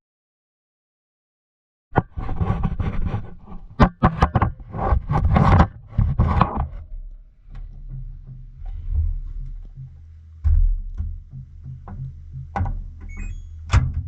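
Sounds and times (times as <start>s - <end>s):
camera knocking inside drum: 2.0s - 6.8s.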